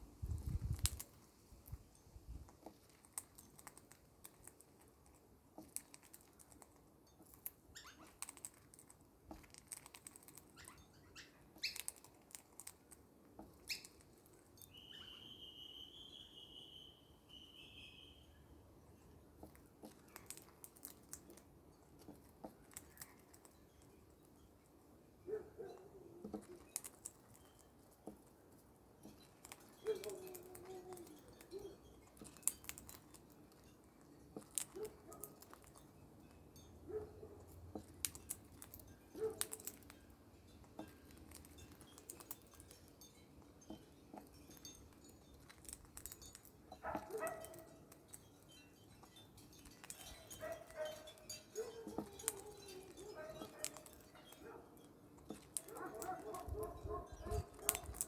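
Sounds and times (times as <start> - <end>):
parrot soft calls and mutters: 7.7 - 8.4.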